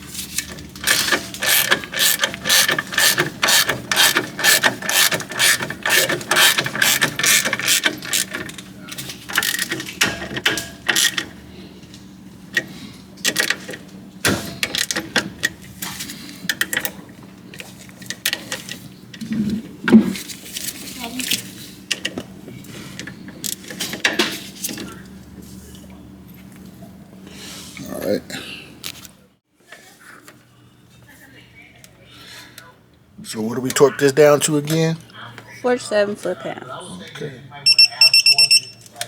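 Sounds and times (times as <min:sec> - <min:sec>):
ratchet wrench clicking: 0:00.8 - 0:08.7, 0:09.3 - 0:09.7, 0:10.8 - 0:11.2.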